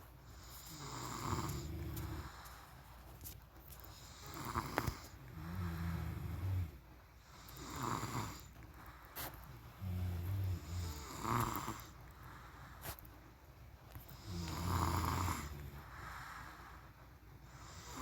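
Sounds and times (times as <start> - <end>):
person snoring: 0.6 - 2.6, 4.1 - 6.8, 9.8 - 12.0, 14.2 - 16.3
breathy puffs of breath: 8.5 - 10.6, 15.4 - 18.0.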